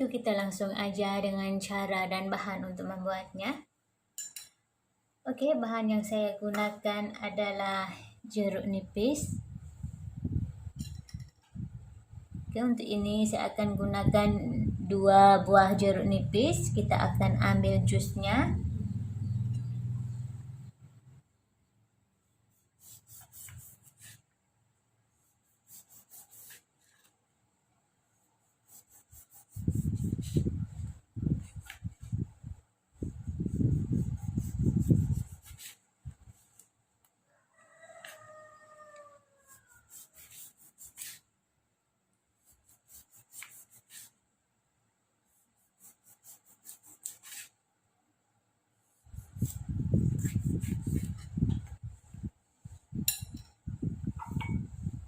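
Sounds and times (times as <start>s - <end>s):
rubbing and scraping on wood: 22.5s - 24.3s, 28.5s - 32.2s, 33.0s - 36.7s, 39.6s - 41.3s, 45.8s - 47.6s, 49.0s - 51.8s.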